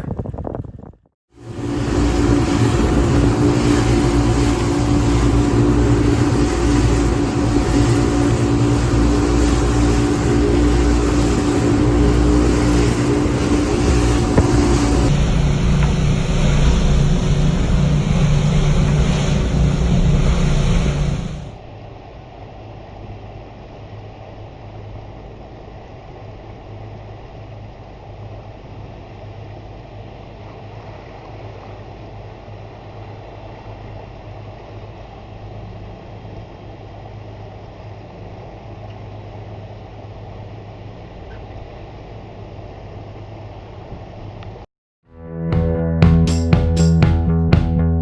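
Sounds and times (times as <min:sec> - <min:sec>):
wind on microphone: 0:00.0 - 0:21.6
boat engine running: 0:00.0 - 0:21.7, 0:45.1 - 0:48.0.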